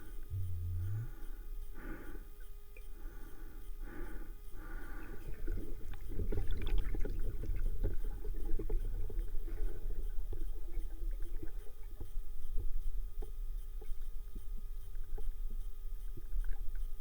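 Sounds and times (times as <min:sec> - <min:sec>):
low underwater rumble: 0:00.0 - 0:01.4.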